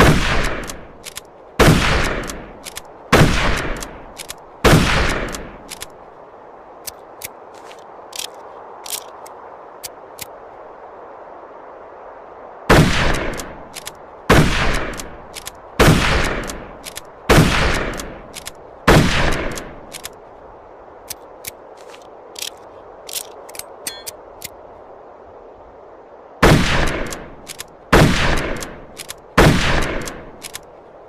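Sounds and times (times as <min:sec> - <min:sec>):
rifle shots echoing: 0:00.0 - 0:00.8, 0:01.6 - 0:02.5, 0:03.1 - 0:04.0, 0:04.6 - 0:05.5, 0:12.7 - 0:13.5, 0:14.3 - 0:15.0, 0:15.8 - 0:16.6, 0:17.3 - 0:18.2, 0:18.9 - 0:19.6, 0:26.4 - 0:27.2, 0:27.9 - 0:28.8, 0:29.4 - 0:30.3
faint clicks: 0:00.4 - 0:01.4, 0:02.0 - 0:04.4, 0:06.8 - 0:10.4, 0:14.8 - 0:15.6, 0:16.2 - 0:17.1, 0:19.3 - 0:20.4, 0:26.8 - 0:29.2, 0:29.8 - 0:30.8.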